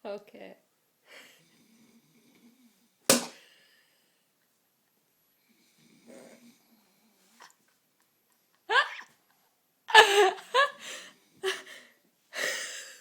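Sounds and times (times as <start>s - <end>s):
bottle striking a person: 3.1s - 3.4s.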